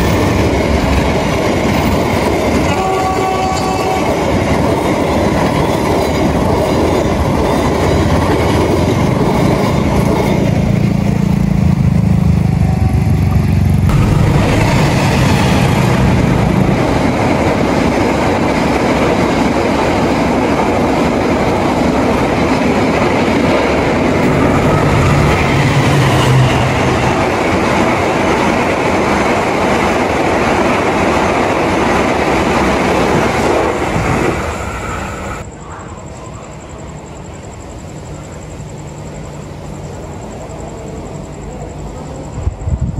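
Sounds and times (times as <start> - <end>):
train wheels on rails: 0.0 - 42.9
low engine drone: 11.5 - 17.7, 24.2 - 27.6.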